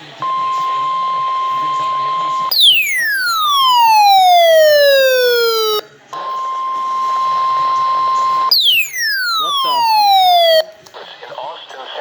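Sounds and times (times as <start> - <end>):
steady alarm tone: 0.3 - 5.8, 6.4 - 10.7
falling electronic sweep: 8.5 - 10.6.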